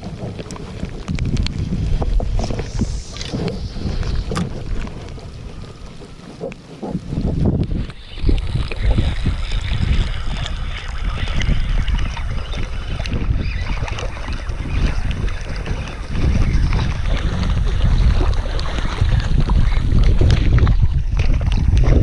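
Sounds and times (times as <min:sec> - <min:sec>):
wind buffeting microphone: 0:00.0 - 0:22.0.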